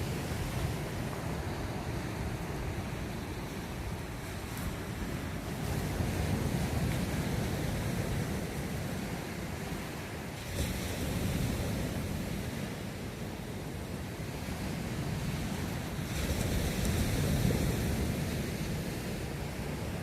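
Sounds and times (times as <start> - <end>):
surf breaking on beach: 0.0 - 20.0.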